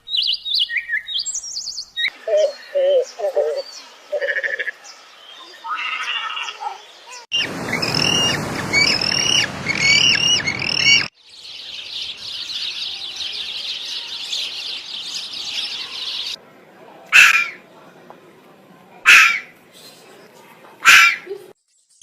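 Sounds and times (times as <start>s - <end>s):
bird calls: 0.0s - 16.4s, 17.1s - 17.6s, 19.1s - 20.1s
harsh bird call: 5.6s - 11.2s, 17.1s - 17.6s, 19.1s - 19.5s, 20.8s - 21.3s
steady rushing noise: 7.4s - 11.1s
high-pitched bird chatter: 8.9s - 11.1s.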